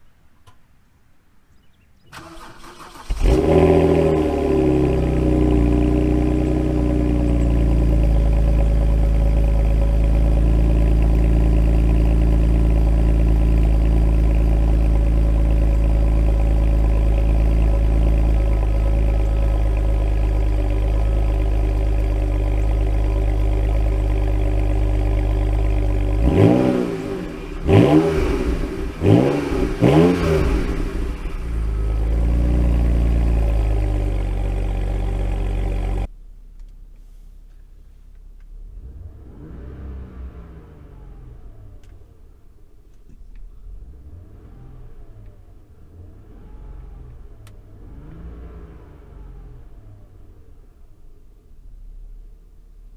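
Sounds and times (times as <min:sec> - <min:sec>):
car engine idling and revving: 0:02.2 - 0:52.9.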